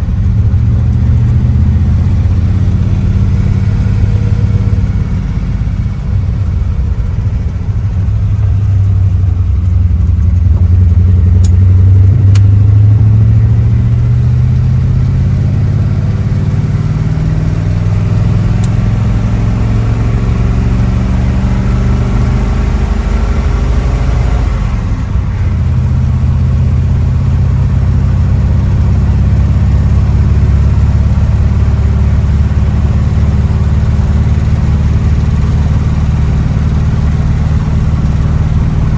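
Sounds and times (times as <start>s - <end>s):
old car engine under load: 0.0s - 20.2s.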